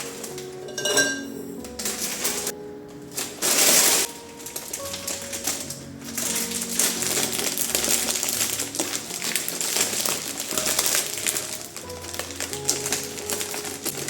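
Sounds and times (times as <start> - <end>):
crinkling of objects handled: 0.0 - 14.0
soft background music: 0.0 - 14.0.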